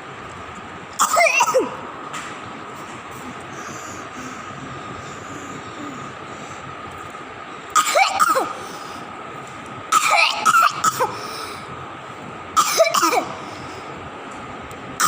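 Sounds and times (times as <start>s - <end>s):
baby coughing: 1.0s - 1.8s, 7.8s - 8.6s, 9.9s - 11.2s, 12.6s - 13.4s.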